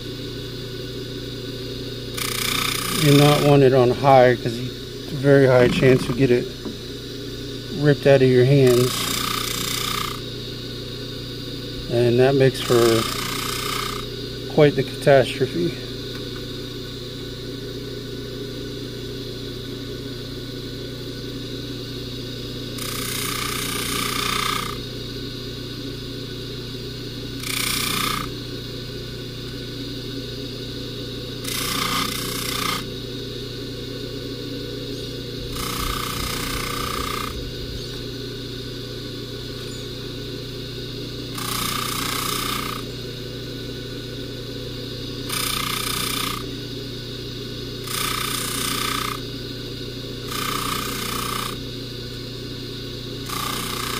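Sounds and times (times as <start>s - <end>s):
polishing buffer motor humming: 0.0s - 53.9s
chain scrubbing on buffing wheel: 2.1s - 6.7s, 7.8s - 10.2s, 11.9s - 15.2s, 22.8s - 24.8s, 27.4s - 28.3s, 31.4s - 32.9s, 35.5s - 37.4s, 41.3s - 42.9s, 45.3s - 46.4s, 47.8s - 49.2s, 50.3s - 51.6s, 53.3s - 53.9s.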